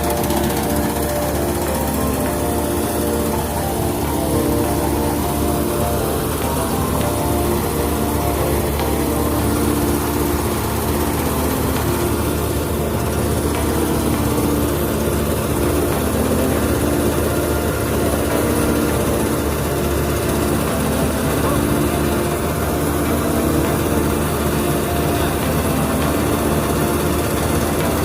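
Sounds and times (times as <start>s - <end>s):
combine harvester engine humming: 0.0s - 28.0s.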